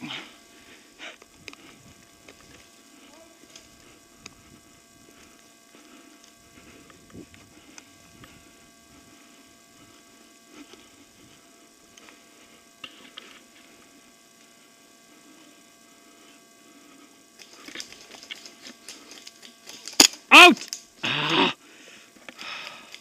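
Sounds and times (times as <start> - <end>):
faint electrical hum: 0.0 - 23.0
rapid clicks and rattles: 17.4 - 20.9.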